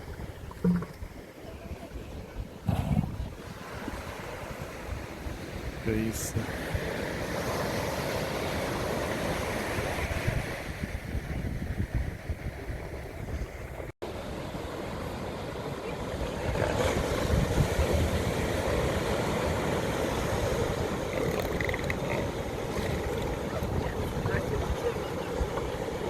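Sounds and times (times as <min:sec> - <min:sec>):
wind on microphone: 0:00.0 - 0:05.8, 0:06.4 - 0:13.9, 0:16.2 - 0:26.0
ocean surf: 0:00.0 - 0:26.0.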